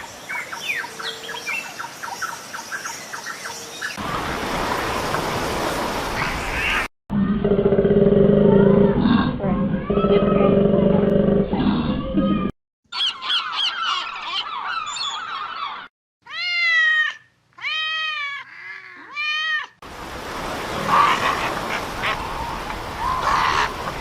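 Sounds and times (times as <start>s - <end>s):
high chirping calls: 12.9s - 15.8s
cat meowing: 16.2s - 19.8s
ducks calling: 20.7s - 24.0s.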